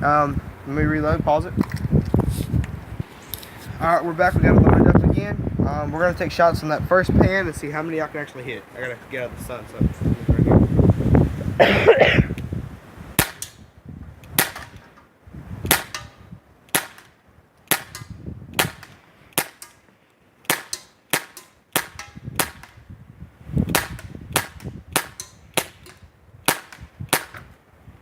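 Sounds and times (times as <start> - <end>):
wind rumbling on microphone: 0.0 - 19.3, 21.8 - 28.0
bb pistol pops: 13.2 - 13.6, 14.2 - 14.9, 15.7 - 19.8, 20.4 - 22.8, 23.7 - 27.5.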